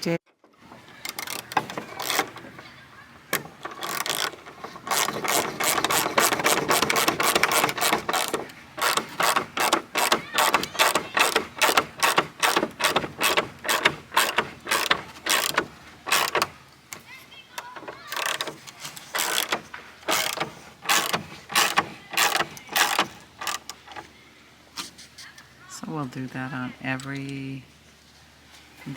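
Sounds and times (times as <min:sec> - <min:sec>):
ratchet wrench clicking: 0:01.0 - 0:02.4, 0:03.6 - 0:16.5, 0:17.6 - 0:24.0.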